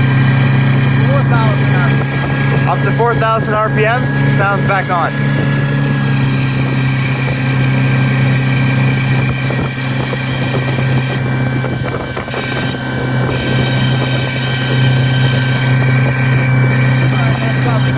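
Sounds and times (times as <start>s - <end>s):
outboard motor running: 0.0s - 17.9s
high-pitched squeal: 0.5s - 8.7s.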